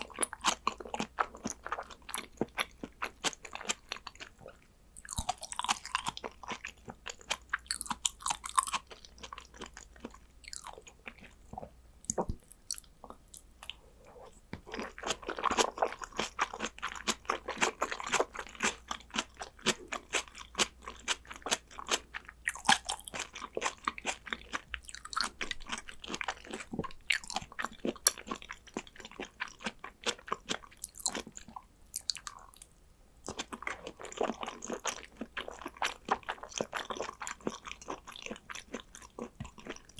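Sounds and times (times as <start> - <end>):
person chewing with mouth clicks: 0.0 - 39.9.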